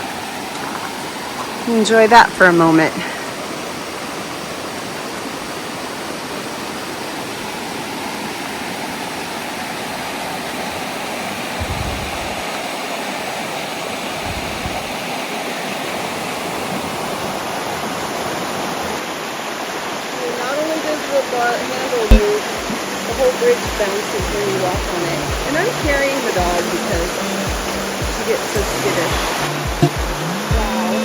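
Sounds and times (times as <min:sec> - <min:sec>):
stream water rushing: 0:00.0 - 0:31.0
low thumps: 0:11.6 - 0:12.4, 0:14.2 - 0:15.0, 0:22.1 - 0:22.8.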